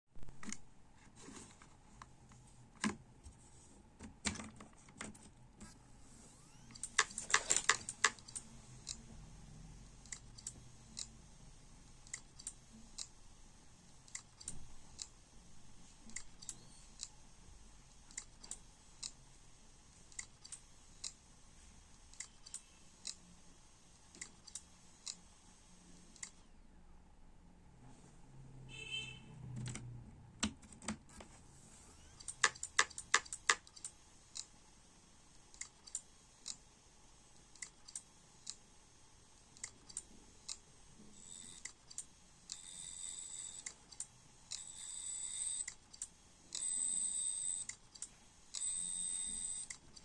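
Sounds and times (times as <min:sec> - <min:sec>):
hard disk drive clicking: 0:06.4 - 0:09.1, 0:32.0 - 0:34.5.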